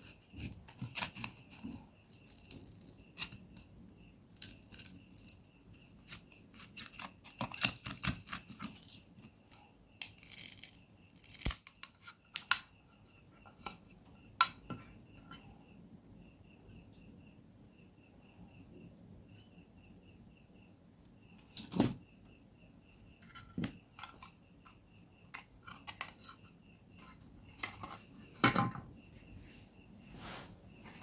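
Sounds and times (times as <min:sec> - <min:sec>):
small tools clicking on plastic: 0:00.0 - 0:03.7, 0:04.3 - 0:12.7.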